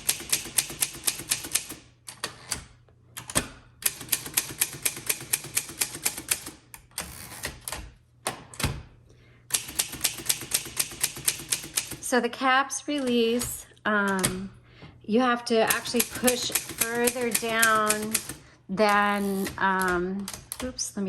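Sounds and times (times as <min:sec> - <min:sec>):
typewriter keys striking: 0:00.0 - 0:02.6, 0:03.2 - 0:07.8, 0:09.5 - 0:12.1, 0:15.7 - 0:20.7.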